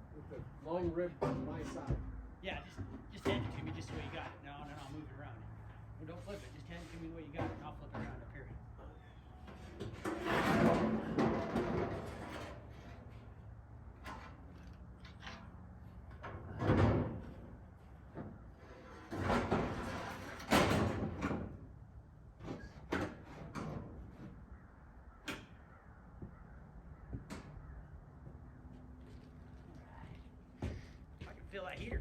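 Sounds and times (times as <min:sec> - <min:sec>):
metal roofing sheets scraping and clanking: 0:02.7 - 0:05.2, 0:06.1 - 0:24.5.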